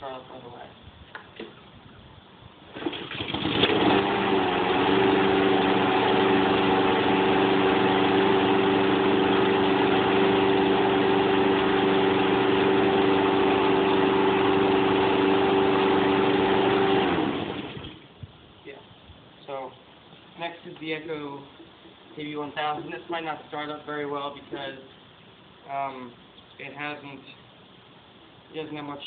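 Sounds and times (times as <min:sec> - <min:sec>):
push mower engine running: 0:02.7 - 0:18.0.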